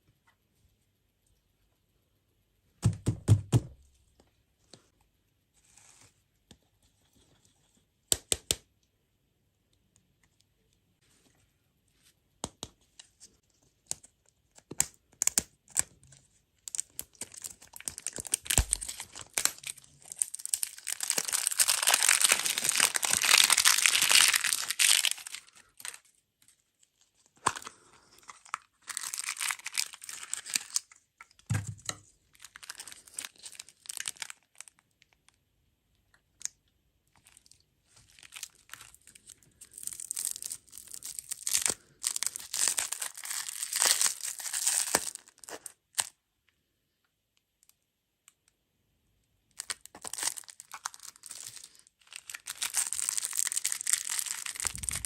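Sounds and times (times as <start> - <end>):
plastic packaging tearing and crinkling: 16.7 - 26.1, 27.4 - 31.0, 32.3 - 34.8, 37.2 - 46.1, 49.6 - 55.0.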